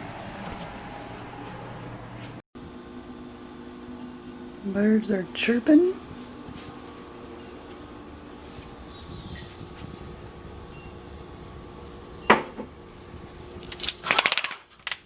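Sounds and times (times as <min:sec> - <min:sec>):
low room hum: 0:00.0 - 0:15.0
birds chirping: 0:02.6 - 0:13.8.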